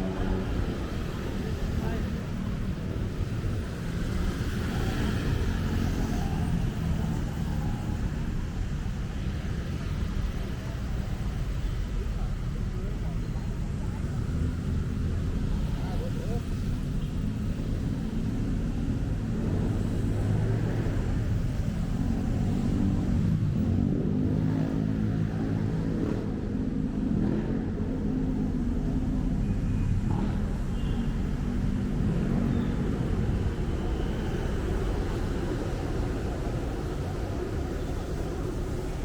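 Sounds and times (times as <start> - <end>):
steady low traffic rumble: 0.0 - 39.0
vehicle engines passing: 0.0 - 39.0.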